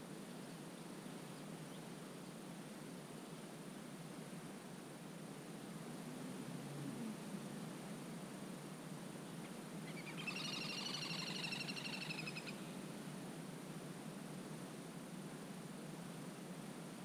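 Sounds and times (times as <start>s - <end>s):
faint background hiss: 0.0s - 17.0s
bird trilling: 9.9s - 12.6s.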